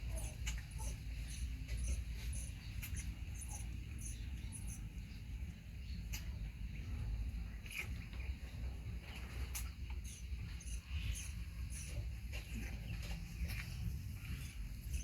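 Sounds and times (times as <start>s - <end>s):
baby monkey squeaking: 0.0s - 4.9s, 10.0s - 13.6s, 14.3s - 15.0s
low steady hum: 0.0s - 15.0s.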